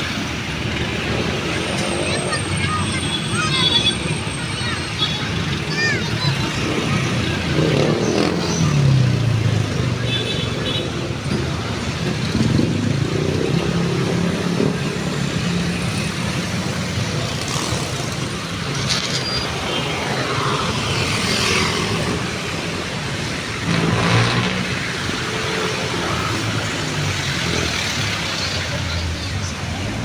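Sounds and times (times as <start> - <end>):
cars passing: 0.0 - 30.0.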